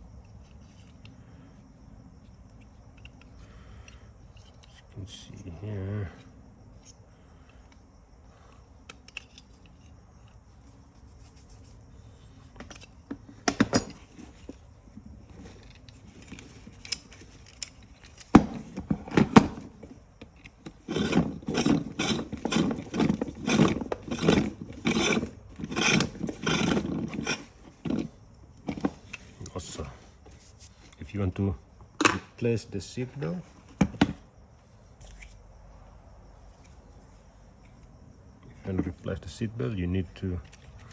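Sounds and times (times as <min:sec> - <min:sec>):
light clicks of parts: 0:02.2 - 0:05.5, 0:06.2 - 0:07.9, 0:08.5 - 0:10.4, 0:15.3 - 0:18.4, 0:40.2 - 0:40.9
rasping scraping strokes: 0:20.8 - 0:27.5.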